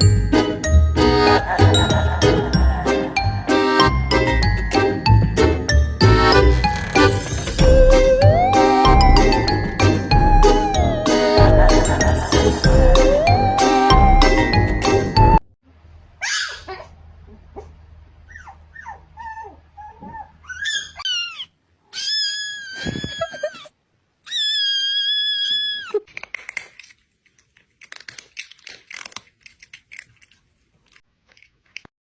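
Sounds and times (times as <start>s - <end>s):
dog whining and yipping: 7.6s - 11.1s, 18.3s - 23.7s.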